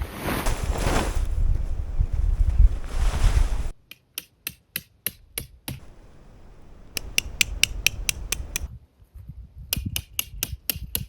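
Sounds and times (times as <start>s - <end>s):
hammer striking tent stake: 4.2s - 8.7s.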